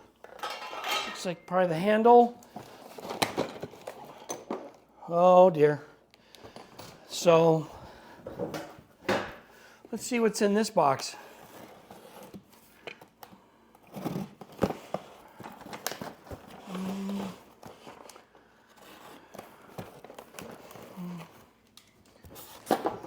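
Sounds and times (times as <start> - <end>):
cardboard and packing rustling: 1.2 - 4.8, 11.2 - 13.2, 13.8 - 23.0.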